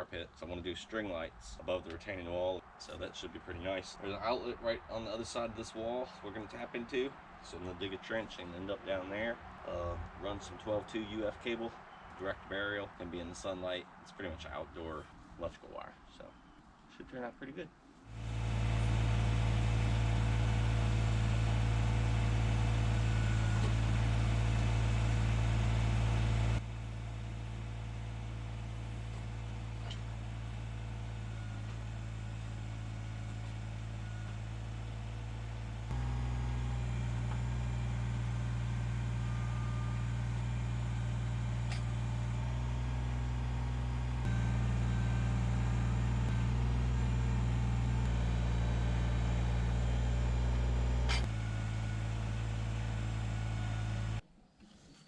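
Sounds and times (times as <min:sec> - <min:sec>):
tractor diesel engine running: 0:18.1 - 0:54.2.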